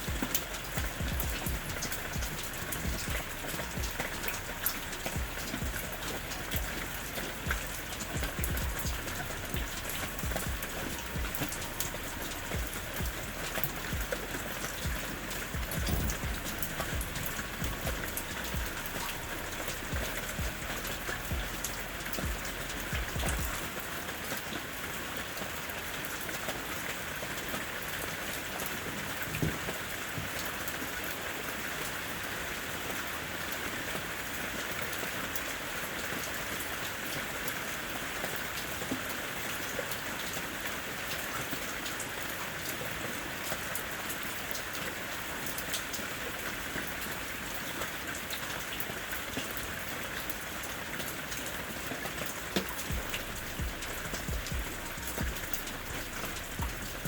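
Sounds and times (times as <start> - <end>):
low rumble: 0.0 - 23.6, 52.9 - 57.0
steady rain falling: 0.0 - 57.0.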